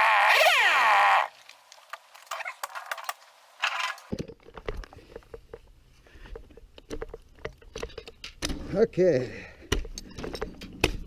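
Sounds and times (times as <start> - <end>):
handling clicks and rattles: 1.4 - 4.1.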